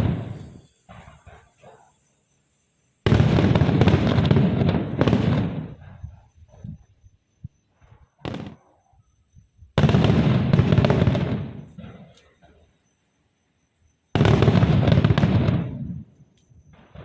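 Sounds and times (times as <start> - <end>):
fireworks bursting with crackling: 0.0 - 2.0, 3.0 - 6.9, 8.0 - 8.7, 9.7 - 12.3, 14.2 - 17.0.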